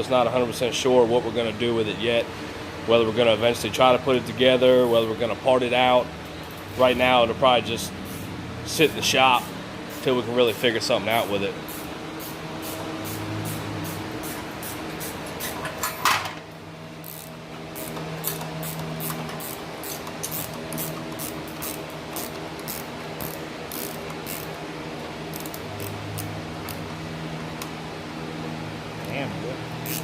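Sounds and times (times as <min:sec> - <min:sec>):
steady hum: 0:00.0 - 0:30.0
hand tool clicking: 0:17.1 - 0:24.5.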